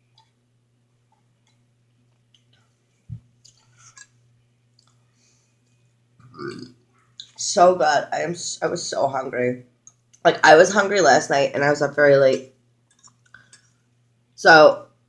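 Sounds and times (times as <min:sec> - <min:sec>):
faint chewing: 0:01.4 - 0:07.4, 0:12.9 - 0:13.8.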